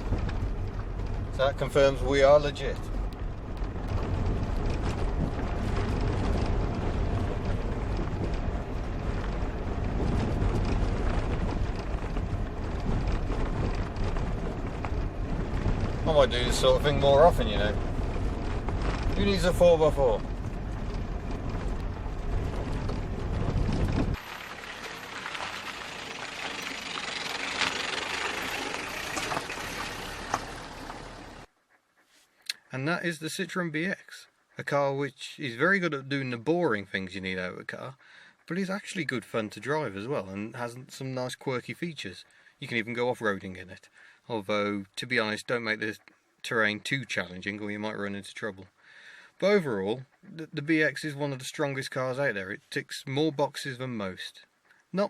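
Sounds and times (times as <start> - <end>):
diesel engine running: 0.0 - 31.5
tyres and body knocking and rattling: 0.0 - 31.5.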